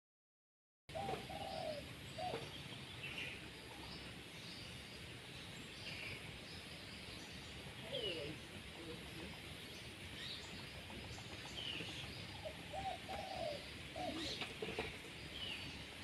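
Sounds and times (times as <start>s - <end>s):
bird cooing: 0.9s - 3.9s, 7.8s - 9.5s, 10.2s - 15.7s
birds chirping: 0.9s - 16.0s
steady background hiss: 0.9s - 16.0s.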